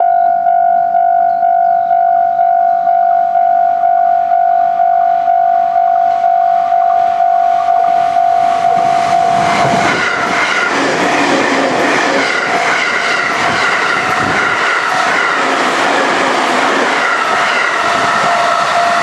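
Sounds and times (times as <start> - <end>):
level crossing warning bell: 0.0 - 19.0.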